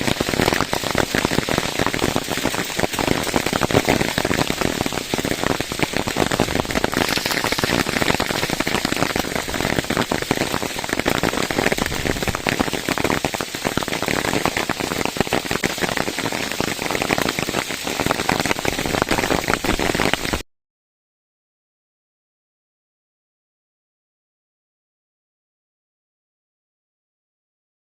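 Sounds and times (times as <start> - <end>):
heavy rain pelting: 0.0 - 20.4.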